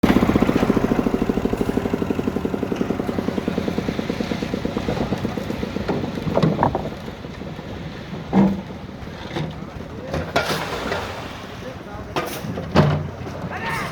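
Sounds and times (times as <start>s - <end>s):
engine chugging: 0.0s - 10.2s.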